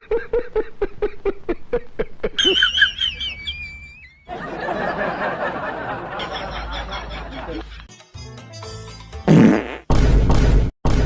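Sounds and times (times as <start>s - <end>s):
person laughing: 0.0s - 7.9s
high wavering squeaky glide: 2.4s - 4.3s
wet sputtering fart sound: 9.3s - 10.1s.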